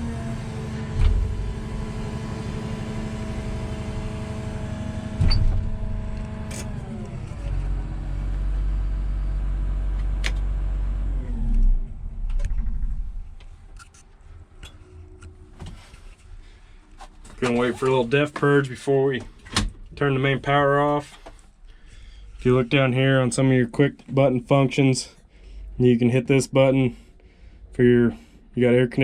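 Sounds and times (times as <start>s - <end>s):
diesel engine running: 0.0s - 16.8s.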